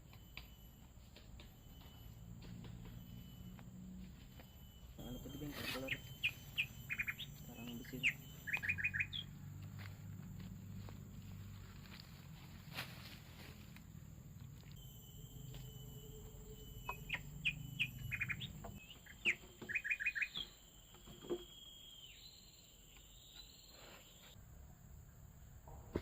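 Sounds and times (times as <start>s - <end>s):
high-pitched hum: 0.0s - 22.6s
short high bird chirps: 5.0s - 9.3s, 16.5s - 20.6s.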